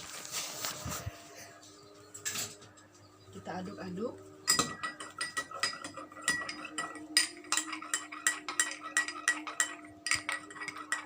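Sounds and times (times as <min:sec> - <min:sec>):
spoon clinking in glass: 0:04.4 - 0:11.0.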